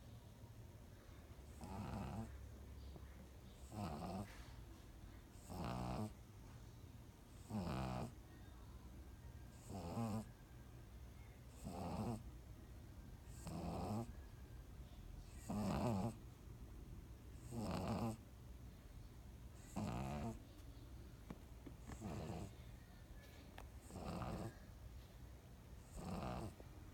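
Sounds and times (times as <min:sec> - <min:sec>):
dog snoring: 0:01.5 - 0:02.4, 0:03.6 - 0:04.4, 0:05.4 - 0:06.2, 0:07.4 - 0:08.2, 0:09.5 - 0:10.3, 0:11.5 - 0:12.2, 0:13.3 - 0:14.2, 0:15.3 - 0:16.2, 0:17.3 - 0:18.2, 0:19.5 - 0:20.4, 0:21.8 - 0:22.6, 0:23.8 - 0:24.6, 0:25.8 - 0:26.6.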